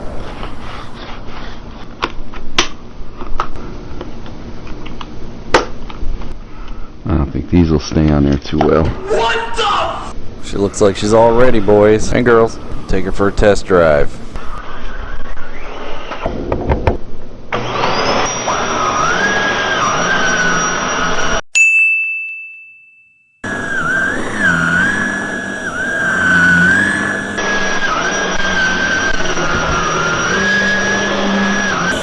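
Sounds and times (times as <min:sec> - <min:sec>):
vacuum cleaner whining: 0:00.0 - 0:01.0, 0:10.4 - 0:16.4, 0:17.5 - 0:21.4, 0:23.4 - 0:32.0
ringing ding: 0:21.5 - 0:23.4.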